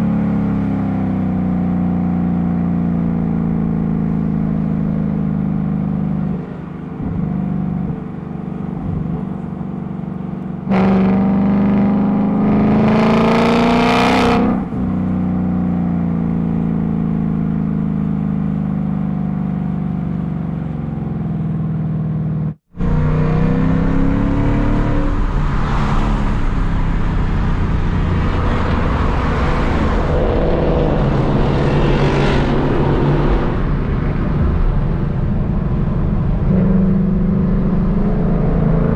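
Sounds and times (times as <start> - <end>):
car engine revving: 0.0 - 38.9
car accelerating past: 4.1 - 18.6, 22.8 - 38.9.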